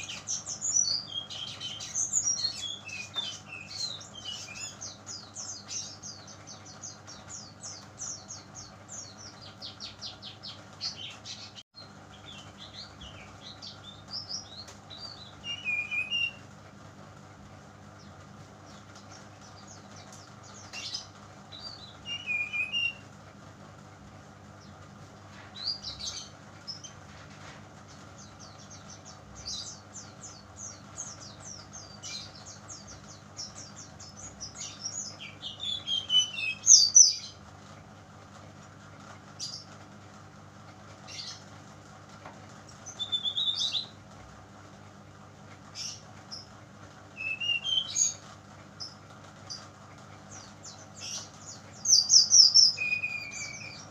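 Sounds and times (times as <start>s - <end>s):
bird chirps and trills: 0.0s - 16.6s, 17.8s - 23.2s, 24.4s - 27.1s, 27.8s - 37.5s, 41.0s - 41.5s, 42.7s - 44.0s, 45.6s - 53.9s
steady low hum: 0.0s - 53.9s.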